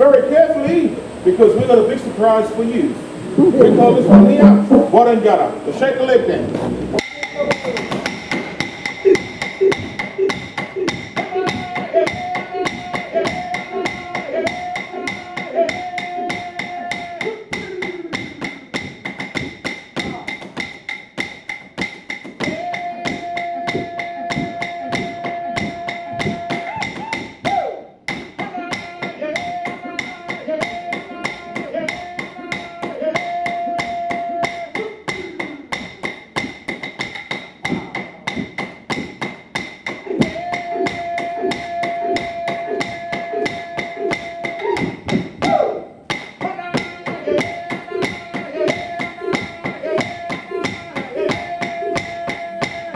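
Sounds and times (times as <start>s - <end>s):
chanted song: 6.7s - 18.8s, 22.4s - 27.6s, 28.4s - 35.8s, 40.0s - 52.9s
clapsticks beating a rhythm: 7.0s - 52.9s.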